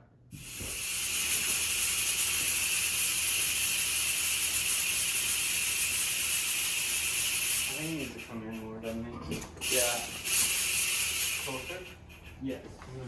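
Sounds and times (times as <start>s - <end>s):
loud high-pitched hiss: 0.3s - 8.3s, 9.6s - 12.0s.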